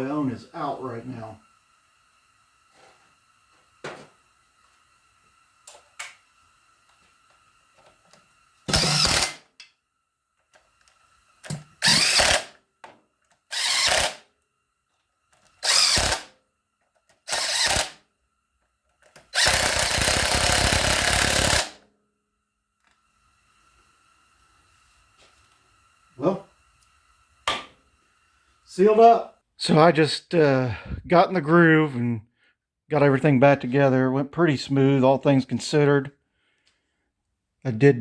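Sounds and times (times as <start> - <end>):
power drill bursts: 8.6 - 9.6, 11.4 - 12.6, 13.5 - 14.3, 15.6 - 16.4, 17.2 - 18.1, 19.3 - 21.9.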